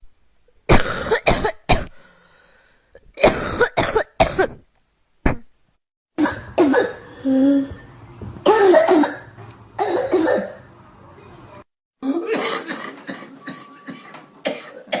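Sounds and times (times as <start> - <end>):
person coughing: 3.2 - 4.6, 6.2 - 7.4, 12.0 - 15.0.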